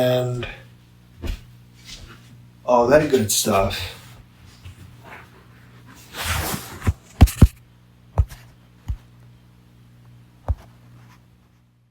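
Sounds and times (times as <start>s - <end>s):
humidifier fan humming: 0.0s - 11.4s
sharp knocks and thumps: 1.2s - 2.2s, 7.2s - 7.6s, 8.2s - 9.0s.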